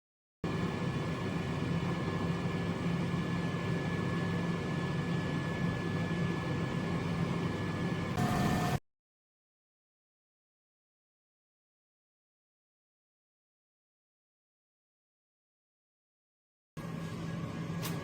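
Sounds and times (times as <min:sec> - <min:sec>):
air fryer fan whirring: 0:00.5 - 0:08.8
faint high whine: 0:00.5 - 0:08.8.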